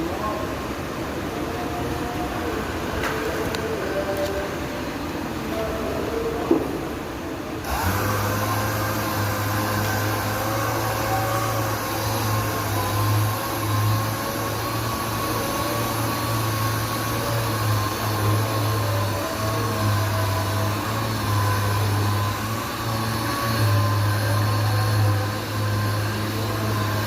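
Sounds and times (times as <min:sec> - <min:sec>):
orbital sander running: 0:07.6 - 0:27.0.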